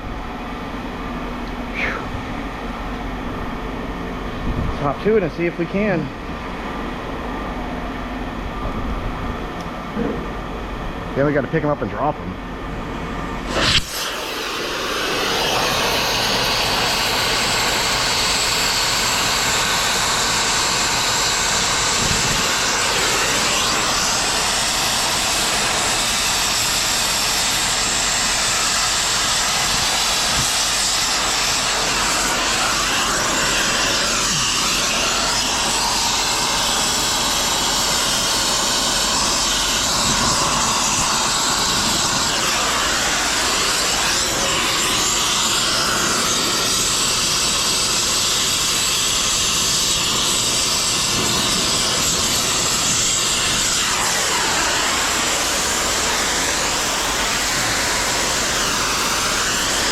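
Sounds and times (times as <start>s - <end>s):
loud hissing machine noise: 0.0s - 59.9s.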